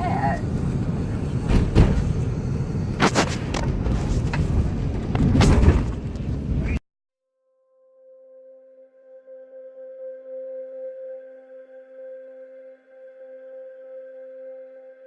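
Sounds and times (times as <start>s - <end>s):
car crash rumble: 0.7s - 6.8s.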